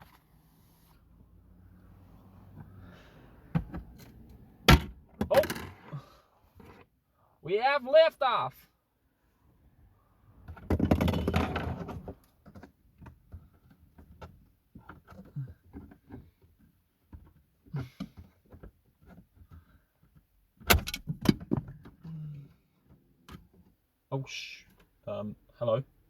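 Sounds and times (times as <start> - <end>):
plastic dashboard parts rattling: 10.4 - 22.1.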